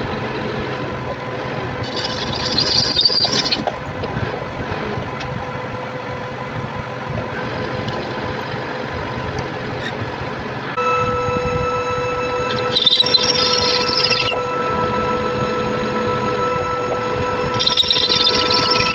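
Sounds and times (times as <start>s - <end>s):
metal lathe whine: 0.0s - 18.9s
high-pitched hiss: 10.8s - 18.9s.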